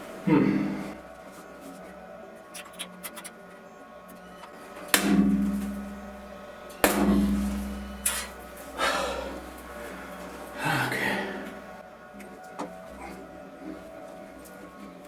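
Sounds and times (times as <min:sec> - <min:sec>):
low ringing hum of metal: 0:03.3 - 0:15.0
sharp knocks on steel: 0:04.9 - 0:08.4.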